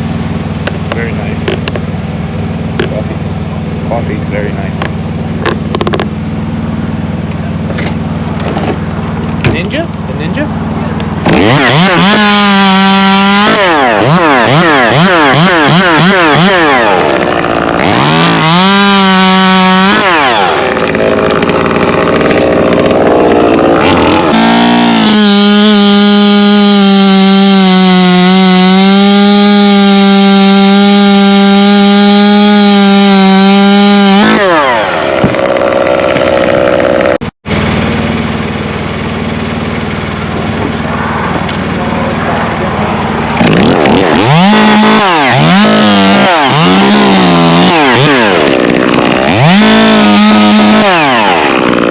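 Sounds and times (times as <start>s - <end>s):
chainsaw revving: 0.0s - 51.9s.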